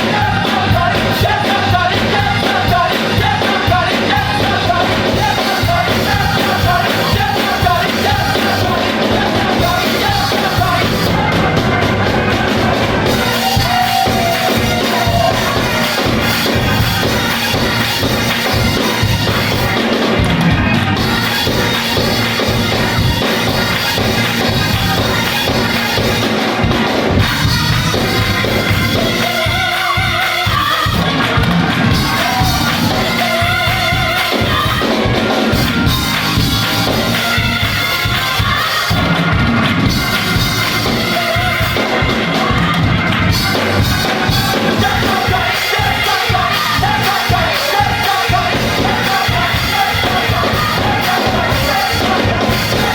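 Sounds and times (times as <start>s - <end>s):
full band accompanying: 0.0s - 52.9s
gospel choir singing: 0.0s - 52.9s.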